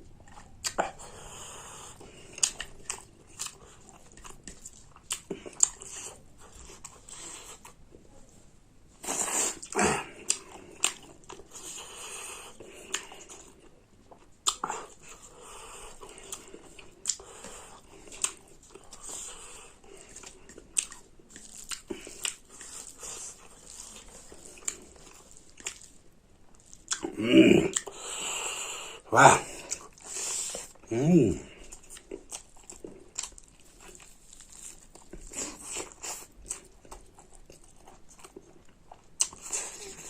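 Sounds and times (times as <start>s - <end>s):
person chewing food: 0.0s - 40.0s
wet mouth clicks and smacks: 14.4s - 14.7s.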